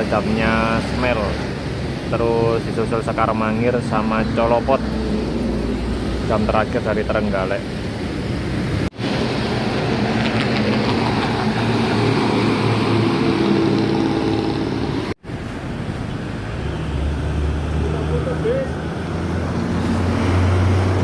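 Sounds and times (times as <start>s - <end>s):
tyre and road noise: 0.0s - 21.0s
vehicle engine passing: 3.6s - 15.2s, 16.2s - 21.0s.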